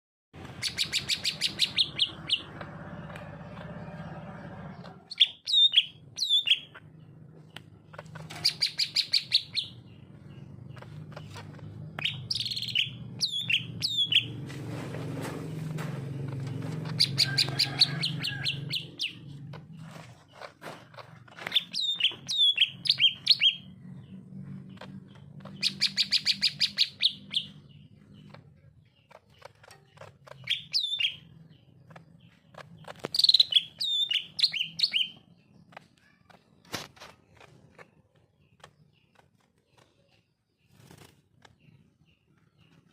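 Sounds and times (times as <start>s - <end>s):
bird singing with whistles: 0.6s - 2.4s, 5.1s - 6.8s, 12.0s - 14.3s, 21.5s - 23.7s, 25.6s - 27.6s, 30.4s - 31.3s, 33.1s - 35.2s.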